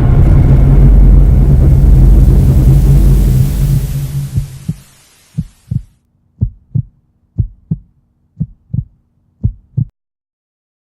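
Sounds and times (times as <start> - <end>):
loud rumbling noise: 0.0 - 8.8
heartbeat thumps: 3.4 - 9.9.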